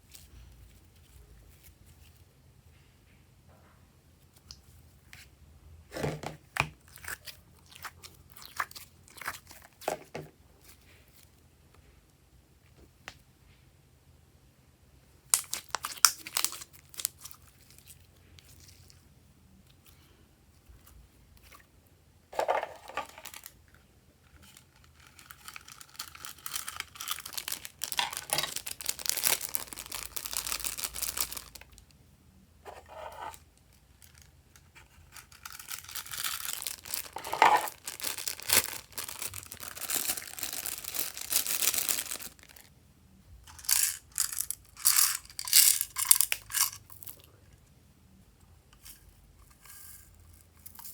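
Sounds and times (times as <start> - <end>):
slime crackling and popping: 35.2 - 42.6.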